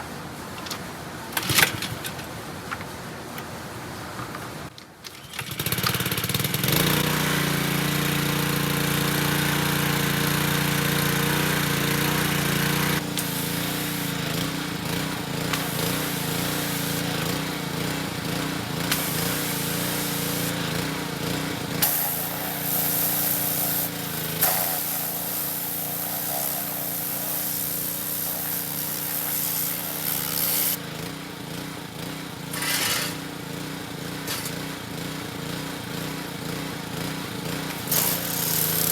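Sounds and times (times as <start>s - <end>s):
pressure washer motor hum: 5.3s - 38.9s
water jet hissing: 7.3s - 30.8s, 37.7s - 38.9s.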